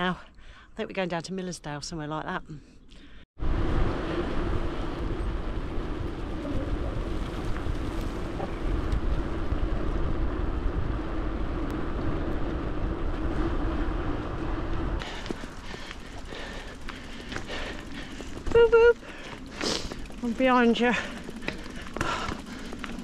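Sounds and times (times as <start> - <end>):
wind on microphone: 3.4 - 15.2
bike tyres rolling on gravel: 3.5 - 23.0.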